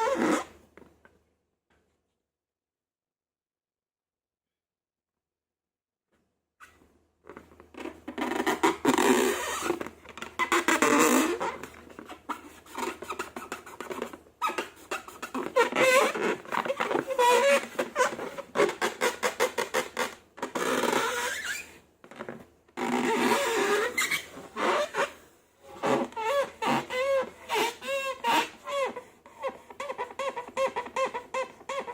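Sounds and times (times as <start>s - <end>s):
balloon rubber squeaking: 0.0s - 0.6s, 6.6s - 31.9s.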